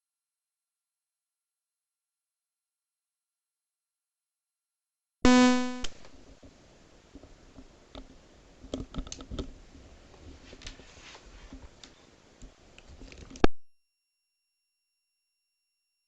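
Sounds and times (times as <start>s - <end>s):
electronic buzz tone: 5.2s - 5.9s.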